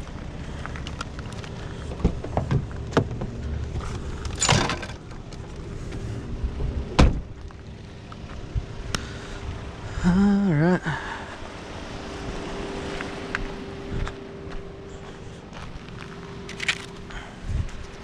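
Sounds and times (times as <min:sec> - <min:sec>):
vehicle engine idling: 0:00.0 - 0:18.0
door slam: 0:04.4 - 0:05.0, 0:07.0 - 0:07.3.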